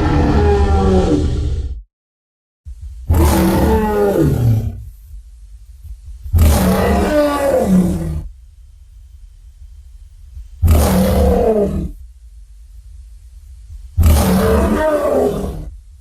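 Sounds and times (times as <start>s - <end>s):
dinosaur roars: 0.0s - 1.8s, 3.1s - 4.9s, 6.4s - 8.3s, 10.6s - 12.0s, 14.0s - 15.7s
low rumble: 2.7s - 16.0s.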